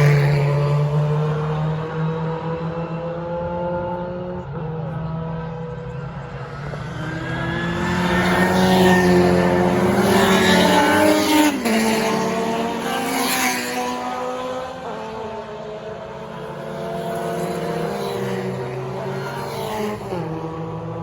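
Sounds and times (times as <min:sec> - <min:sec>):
racing cars passing at full throttle: 0:00.0 - 0:21.0.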